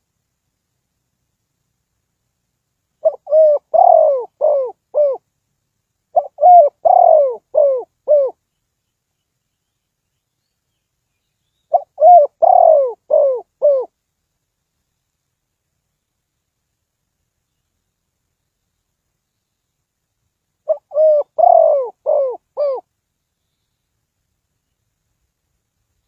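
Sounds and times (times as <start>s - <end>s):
dove cooing: 3.0s - 5.2s, 6.1s - 8.4s, 11.7s - 13.9s, 20.6s - 22.9s.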